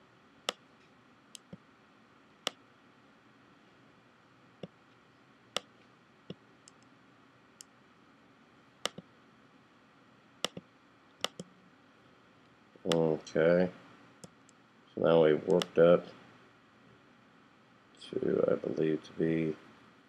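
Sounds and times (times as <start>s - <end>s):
faint steady hiss: 0.0s - 20.0s
computer mouse clicking: 8.8s - 9.0s, 10.4s - 11.5s.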